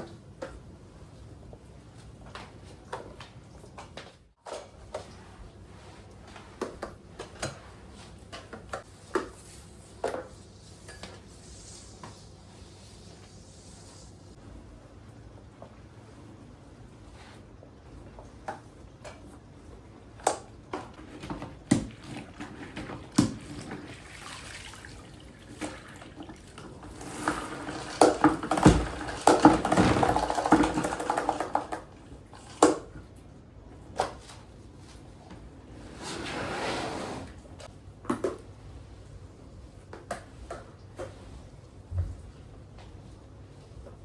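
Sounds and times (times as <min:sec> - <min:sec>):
water running in sink: 0:23.1 - 0:29.4.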